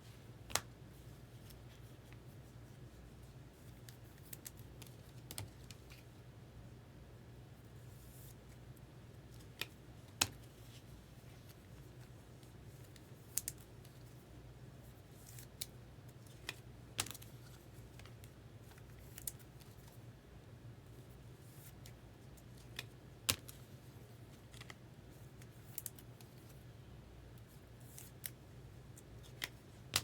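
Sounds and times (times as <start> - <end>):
cards clicking and snapping: 9.4 - 10.5, 12.9 - 14.0, 15.2 - 19.9, 21.6 - 23.6, 29.0 - 30.0.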